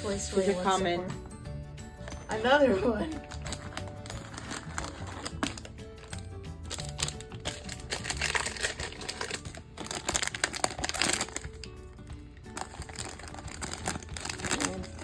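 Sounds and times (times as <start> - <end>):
background music: 0.0 - 15.0
plastic bag crinkling: 3.1 - 11.8, 12.5 - 15.0.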